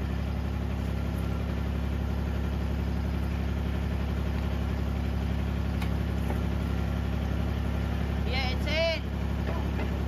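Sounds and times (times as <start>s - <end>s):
excavator engine idling: 0.0s - 10.0s.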